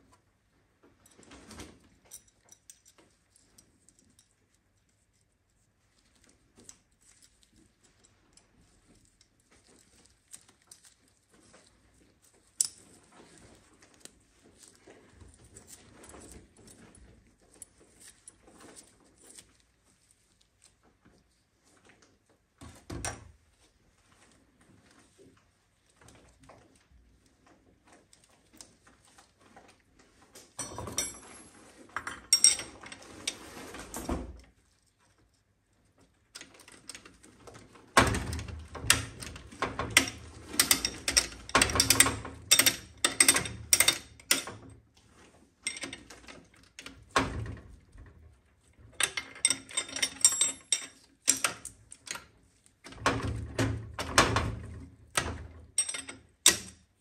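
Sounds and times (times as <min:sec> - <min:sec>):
metal tools clicking and clanking: 0:30.6 - 0:33.5, 0:38.3 - 0:44.6, 0:49.0 - 0:52.2, 0:55.2 - 0:56.8.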